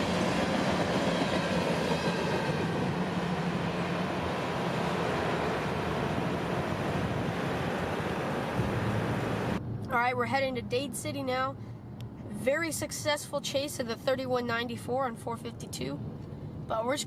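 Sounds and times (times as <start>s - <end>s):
freight train wheels rumbling on rail: 0.0s - 9.6s
low hum: 0.0s - 10.8s.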